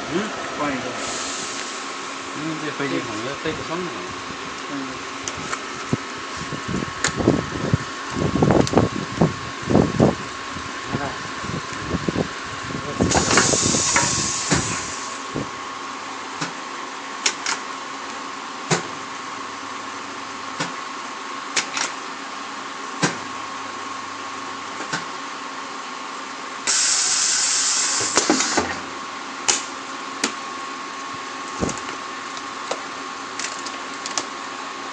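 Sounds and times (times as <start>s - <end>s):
loud hiss: 0.8s - 2.0s, 13.1s - 15.2s, 26.7s - 28.7s
welding machine humming: 13.1s - 16.4s, 26.6s - 34.9s.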